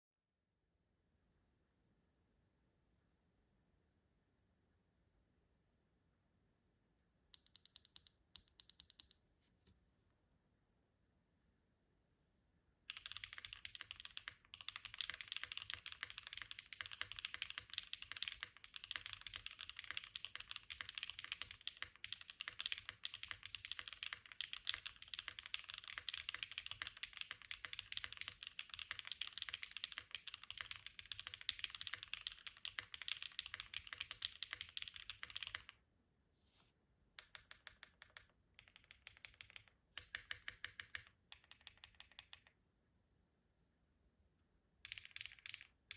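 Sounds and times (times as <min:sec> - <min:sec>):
mechanical keyboard typing: 0:07.4 - 0:09.2, 0:12.9 - 0:35.8, 0:37.2 - 0:42.6, 0:44.8 - 0:45.9.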